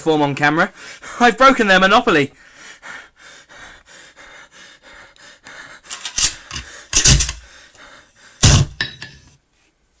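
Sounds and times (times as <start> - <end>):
heavy thumps: 8.4 - 9.2.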